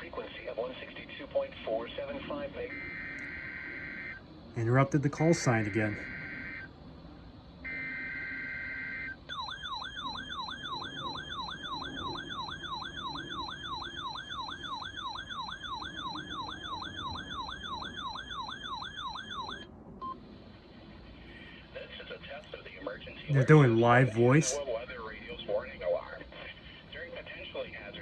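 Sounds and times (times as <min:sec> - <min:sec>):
warbling electronic alarm tone: 0:02.7 - 0:04.2, 0:04.9 - 0:06.7, 0:07.7 - 0:19.7.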